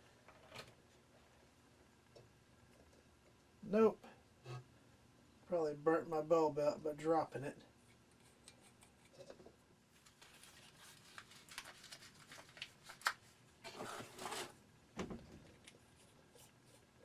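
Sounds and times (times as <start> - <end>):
rustling: 7.8 - 14.6.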